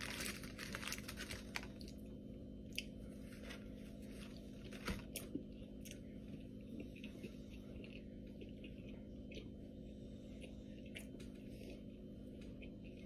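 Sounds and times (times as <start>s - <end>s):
crunchy chewing: 2.7s - 9.6s, 10.2s - 13.0s.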